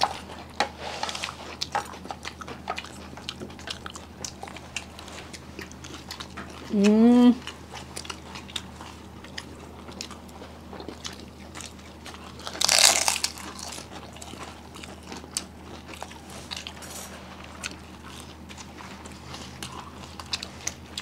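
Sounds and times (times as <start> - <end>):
people chewing: 0.0 - 21.0
crunching: 10.8 - 18.7.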